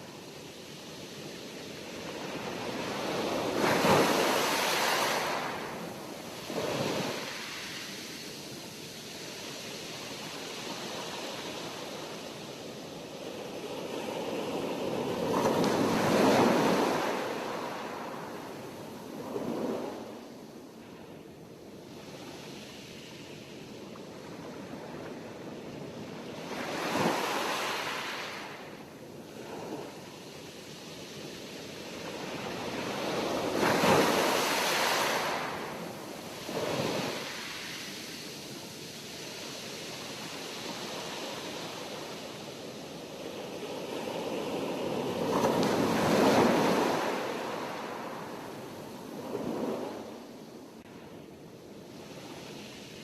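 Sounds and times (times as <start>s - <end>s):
sea waves breaking on shore: 0.6s - 20.4s, 25.9s - 50.8s.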